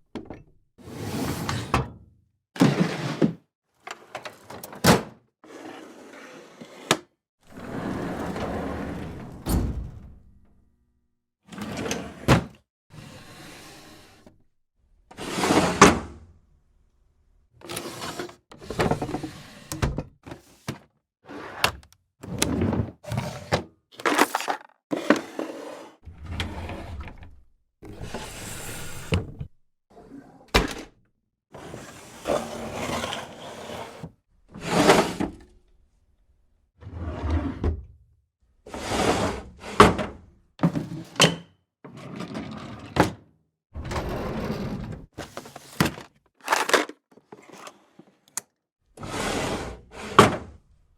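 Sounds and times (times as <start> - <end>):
drawers sliding: 0.8 - 1.9, 2.6 - 3.4, 4.0 - 9.6, 11.5 - 14.3, 15.2 - 16.0, 17.6 - 30.9, 31.9 - 35.4, 36.8 - 37.9, 43.8 - 48.1, 49.0 - 50.5.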